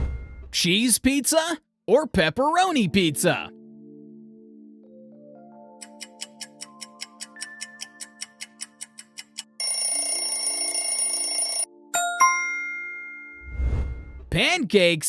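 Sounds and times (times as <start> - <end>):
soft background music: 1.9 - 13.8
clock ticking: 5.8 - 9.7
alarm bell ringing: 9.6 - 13.4.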